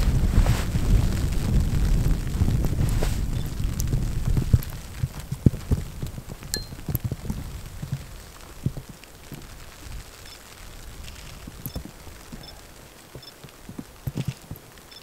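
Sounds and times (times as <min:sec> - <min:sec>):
wind buffeting microphone: 0:00.0 - 0:14.8.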